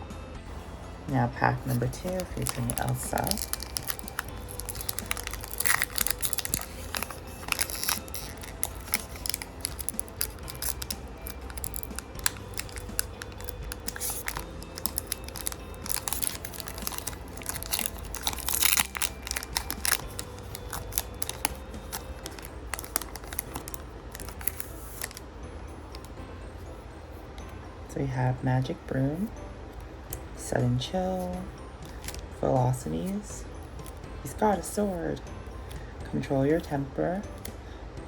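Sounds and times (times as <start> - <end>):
cards rustling: 1.5 - 26.1, 31.2 - 32.3
card pack wrapper tearing: 1.7 - 25.2, 31.9 - 32.2.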